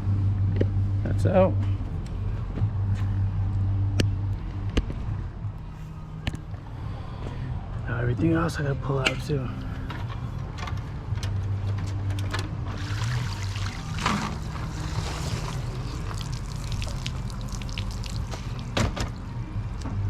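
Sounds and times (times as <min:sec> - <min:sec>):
steady low hum: 0:00.0 - 0:20.0
water pouring and trickling: 0:12.7 - 0:18.8.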